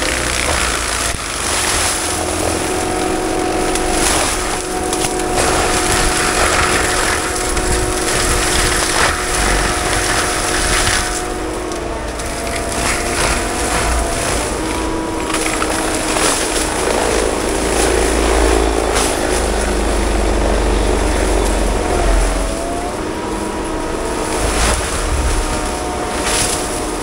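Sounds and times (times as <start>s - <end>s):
drum grinding through brush: 0.0s - 27.0s
forestry mulcher whining: 0.0s - 27.0s
wood snapping: 0.0s - 27.0s.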